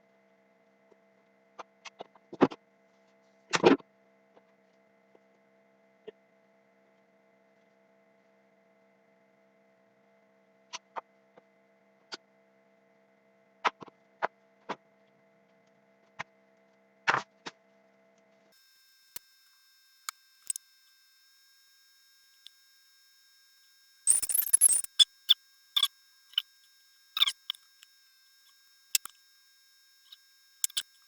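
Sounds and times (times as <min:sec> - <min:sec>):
steady low hum: 0:18.6 - 0:31.0
tools and parts clicking: 0:20.0 - 0:20.6, 0:24.1 - 0:25.1, 0:27.2 - 0:27.9, 0:28.5 - 0:29.2, 0:30.0 - 0:31.0.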